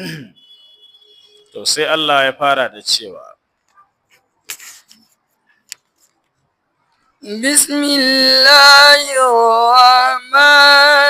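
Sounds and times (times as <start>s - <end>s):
person chanting recitation: 7.2s - 11.0s.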